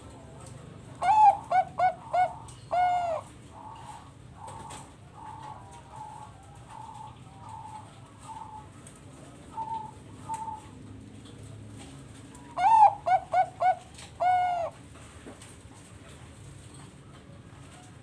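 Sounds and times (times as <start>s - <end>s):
dove cooing song: 0.9s - 10.9s, 12.3s - 14.9s
faint dove coos: 1.0s - 8.8s, 9.4s - 10.8s, 12.4s - 14.8s.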